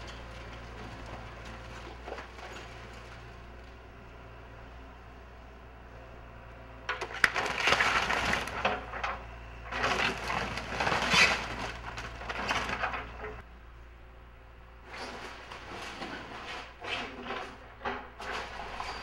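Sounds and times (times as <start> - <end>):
wood cracking and splintering: 6.9 - 13.4.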